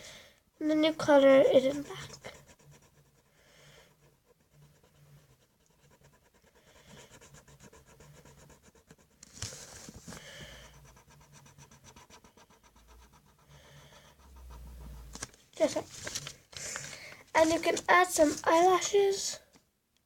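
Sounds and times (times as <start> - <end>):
marker rubbing on paper: 0.9 - 19.0
paper rustle: 9.2 - 10.4, 15.1 - 18.7.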